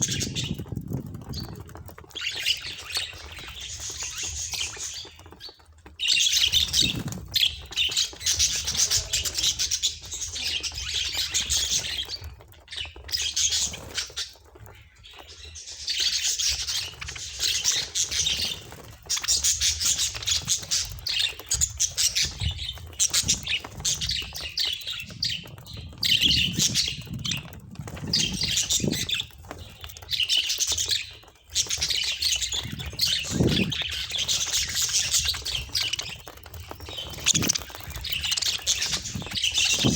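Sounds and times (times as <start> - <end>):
budgerigars chattering: 36.9 - 39.9.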